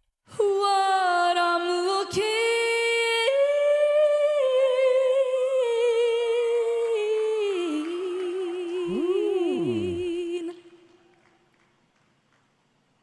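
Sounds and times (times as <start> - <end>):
woman singing a high note: 0.4 - 10.8.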